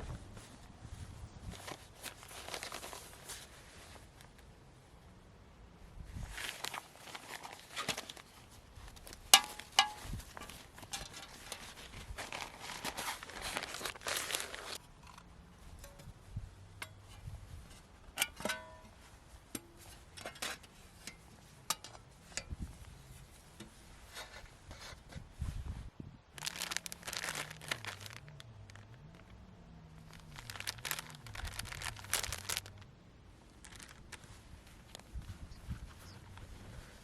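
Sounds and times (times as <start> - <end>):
packaging crinkling and rustling: 1.5 - 3.5, 6.3 - 14.8, 26.4 - 29.4, 30.0 - 32.8, 33.5 - 35.2.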